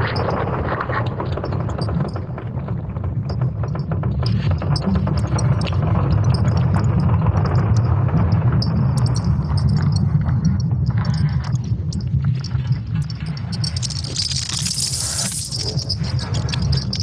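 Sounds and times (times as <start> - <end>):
irregular crackles and clicks: 5.2 - 17.0.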